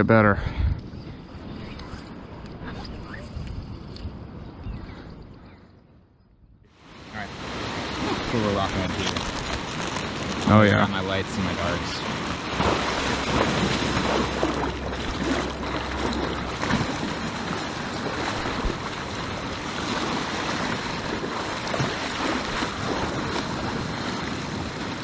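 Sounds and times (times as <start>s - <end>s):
wind buffeting microphone: 0.0s - 5.6s, 6.9s - 25.0s
ocean surf splashing: 6.7s - 25.0s.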